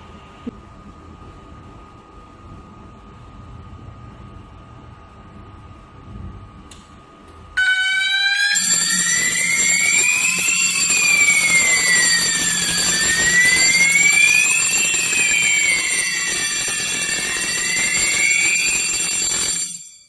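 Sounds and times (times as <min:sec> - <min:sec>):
fire alarm rising and falling tone: 0:07.6 - 0:20.0
steady high-pitched tones: 0:07.6 - 0:20.0.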